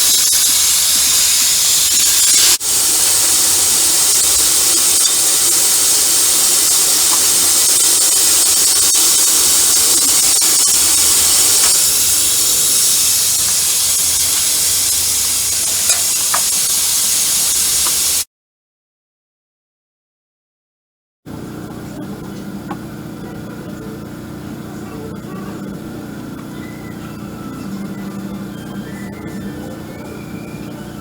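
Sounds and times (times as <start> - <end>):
pressure washer spraying water: 0.0 - 18.3.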